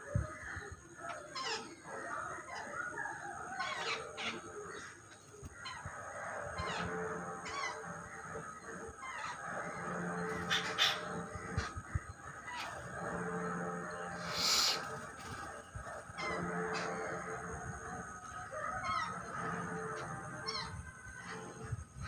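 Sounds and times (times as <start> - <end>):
flock of birds calling: 0.0 - 22.0.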